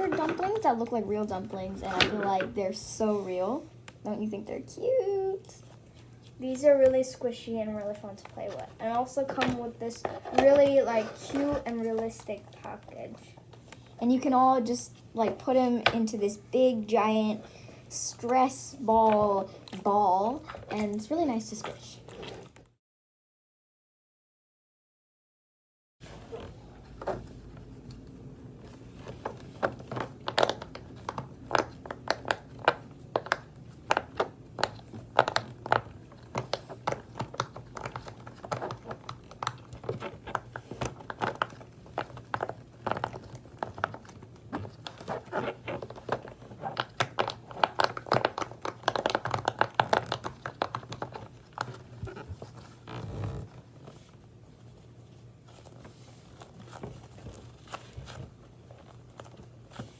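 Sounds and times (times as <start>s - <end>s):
fidget toys crinkling and clicking: 5.4s - 14.4s, 27.0s - 54.1s.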